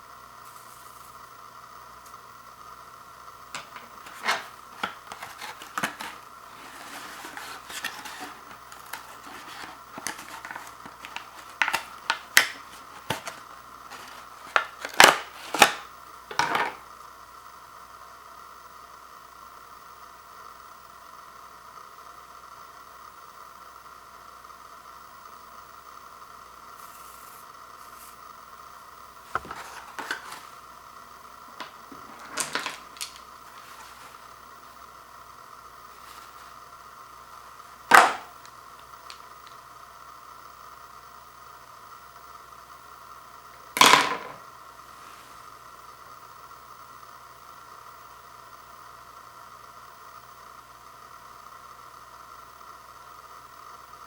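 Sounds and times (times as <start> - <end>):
plastic clicks and rattles: 3.6 - 16.8.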